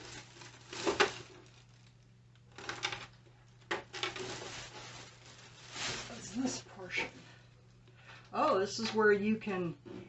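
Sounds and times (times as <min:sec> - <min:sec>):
plastic cover rustling and clattering: 0:00.0 - 0:07.1.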